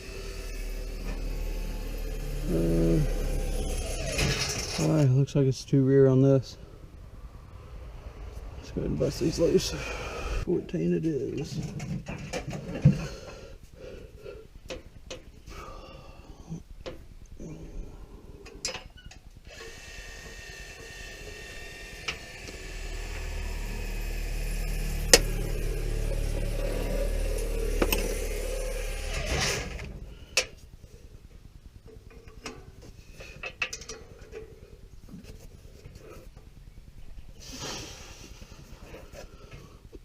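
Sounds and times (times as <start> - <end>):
power wrench running: 0.0 - 4.9, 19.4 - 29.9
hand tools clicking and knocking: 32.1 - 34.5.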